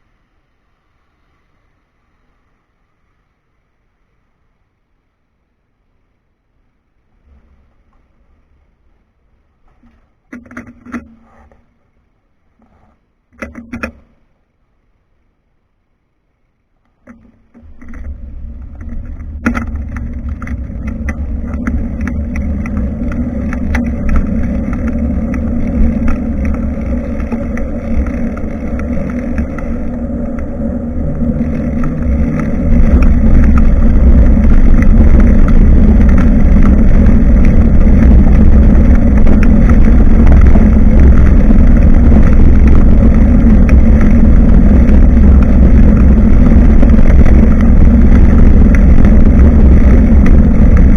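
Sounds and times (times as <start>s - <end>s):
wind and riding noise: 16.9s - 50.9s.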